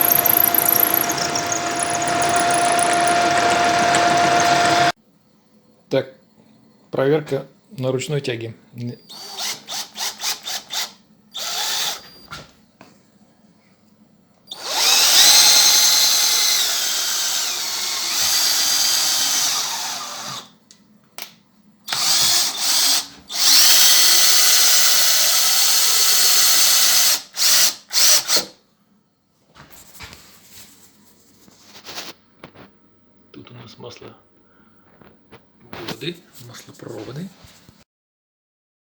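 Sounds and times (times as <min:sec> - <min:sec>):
electric motors whining: 0:00.0 - 0:04.9.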